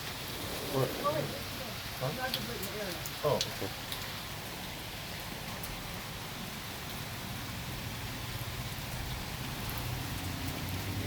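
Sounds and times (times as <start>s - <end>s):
steady rain falling: 0.0s - 11.0s.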